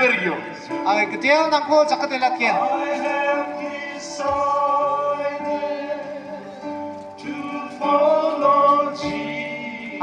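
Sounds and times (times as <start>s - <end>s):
music with long held notes: 0.0s - 10.0s
person singing: 2.6s - 10.0s.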